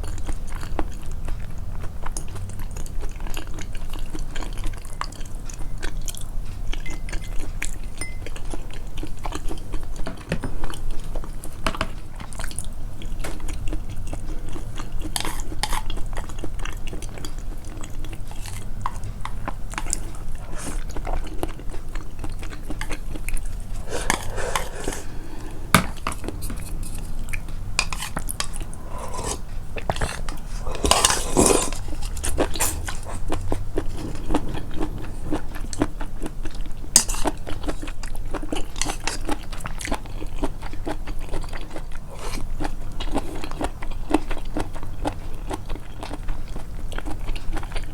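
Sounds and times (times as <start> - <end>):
low steady hum: 0.0 - 41.2
person chewing and biting: 12.2 - 47.9.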